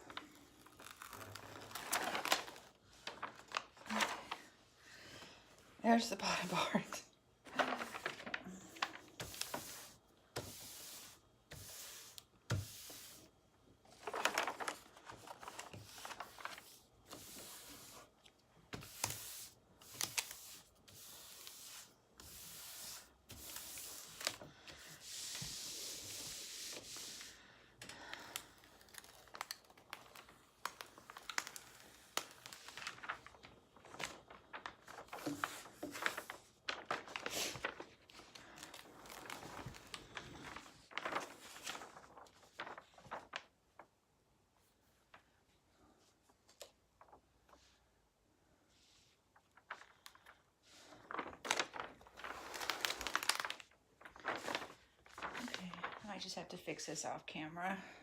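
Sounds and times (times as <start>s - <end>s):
plastic crinkling and rustling: 0.0s - 4.6s, 7.4s - 10.5s, 13.2s - 22.0s, 23.0s - 26.9s, 27.9s - 43.9s, 49.3s - 56.9s.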